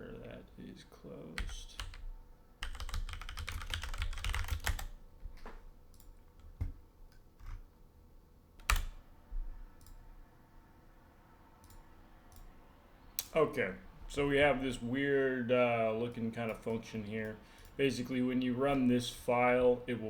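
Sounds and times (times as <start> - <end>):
typing on computer keyboard: 1.4 - 7.7, 8.6 - 9.0.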